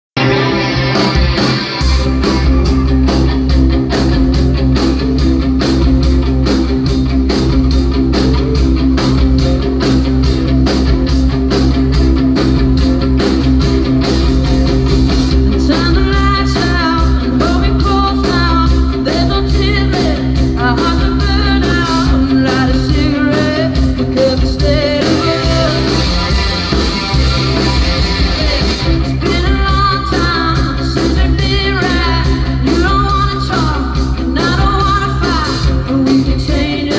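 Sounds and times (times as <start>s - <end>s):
rock band playing: 0.1s - 36.9s
higher melody line: 0.2s - 15.8s, 23.3s - 29.8s.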